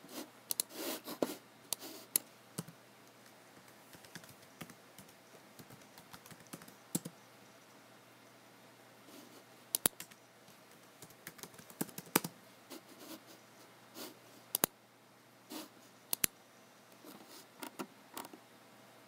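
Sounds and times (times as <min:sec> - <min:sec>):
sharp clicks: 0:00.5 - 0:00.7, 0:09.7 - 0:12.3, 0:14.5 - 0:14.8, 0:16.1 - 0:16.4
computer keyboard keystrokes: 0:02.6 - 0:07.1, 0:09.8 - 0:10.2, 0:11.0 - 0:12.3, 0:16.1 - 0:16.3.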